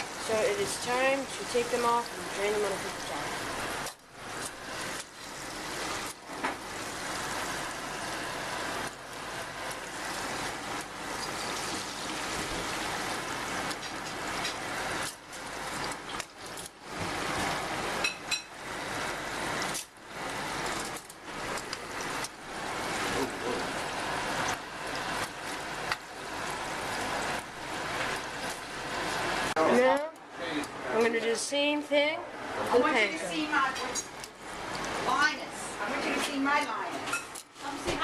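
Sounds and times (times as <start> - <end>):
fish sizzling in hot oil: 0.0 - 29.6.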